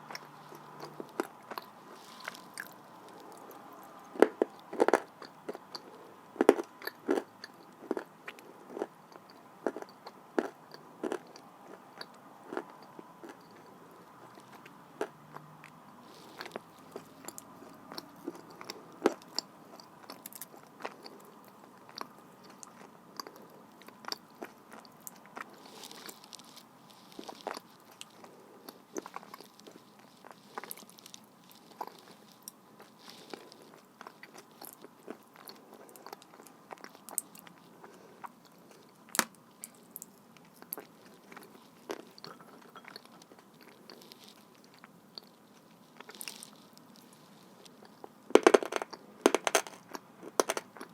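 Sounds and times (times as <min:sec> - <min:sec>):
person chewing clay crunching: 0:00.0 - 0:50.9.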